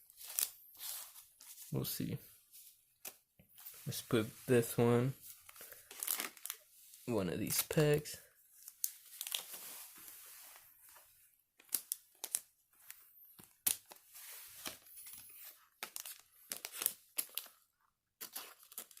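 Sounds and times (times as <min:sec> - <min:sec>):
foil wrapper tearing and crinkling: 0:00.2 - 0:00.6, 0:05.5 - 0:06.6, 0:08.8 - 0:09.6, 0:15.8 - 0:17.5, 0:18.2 - 0:19.0.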